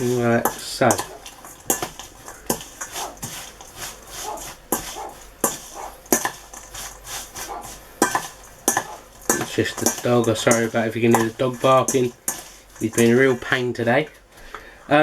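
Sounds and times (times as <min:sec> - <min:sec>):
spoon mixing in a bowl: 0:00.0 - 0:14.2
dog barking: 0:01.0 - 0:01.4, 0:02.9 - 0:03.2, 0:04.2 - 0:06.1, 0:07.4 - 0:07.9, 0:08.8 - 0:09.1.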